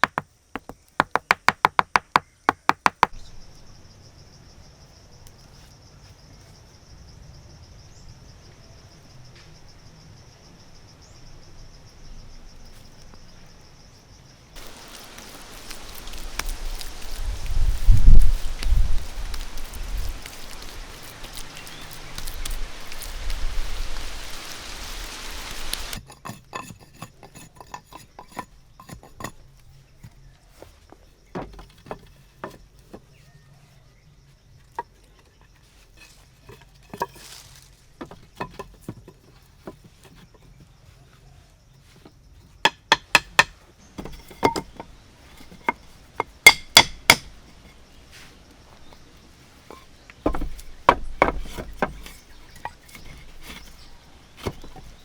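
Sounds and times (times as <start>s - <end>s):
steady hiss with low thuds: 14.6s - 26.0s, 43.7s - 55.0s.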